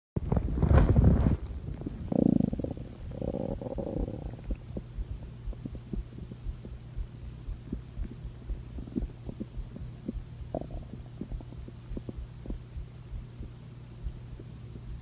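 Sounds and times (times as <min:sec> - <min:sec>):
stomach growling gurgles: 0:00.2 - 0:06.7, 0:07.7 - 0:12.6
steady low hum: 0:00.2 - 0:15.0.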